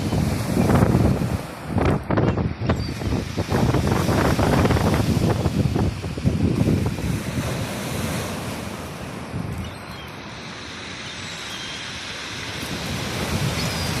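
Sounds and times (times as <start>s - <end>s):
surf washing onto beach: 0.0s - 2.1s, 2.9s - 14.0s
wind buffeting microphone: 0.0s - 8.3s, 12.6s - 14.0s.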